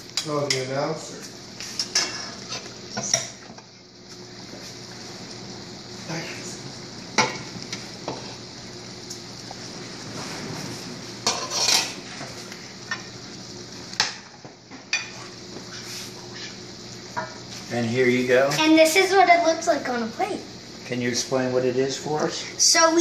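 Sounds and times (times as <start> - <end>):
pan sizzling: 0.0 - 23.0
metal utensils clinking on pan: 11.2 - 12.0.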